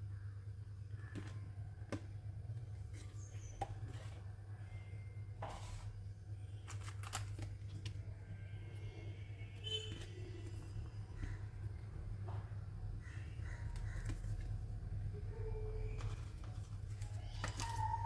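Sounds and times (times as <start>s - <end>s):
steady low hum: 0.0s - 18.0s
packaging rustle: 6.6s - 8.0s.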